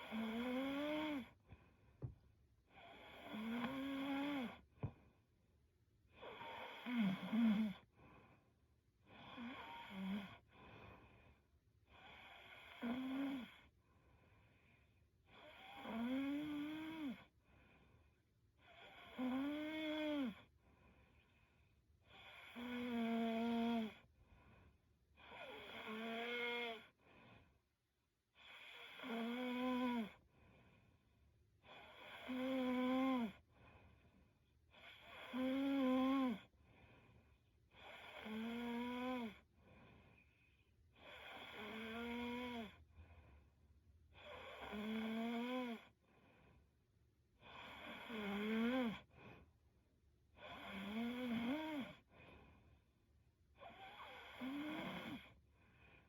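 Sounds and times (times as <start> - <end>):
woman snoring: 0.0 - 1.4, 2.8 - 4.6, 6.2 - 7.9, 9.1 - 10.5, 11.9 - 13.7, 15.3 - 17.3, 18.6 - 20.5, 22.1 - 24.1, 25.2 - 27.0, 28.4 - 30.2, 31.6 - 33.5, 34.7 - 36.5, 37.8 - 39.5, 41.0 - 42.8, 44.2 - 46.0, 47.4 - 49.1, 50.4 - 52.1, 53.6 - 55.4
soft breath: 7.8 - 8.6, 10.3 - 11.5, 36.4 - 37.6, 39.4 - 40.9, 45.9 - 46.8, 55.3 - 56.0.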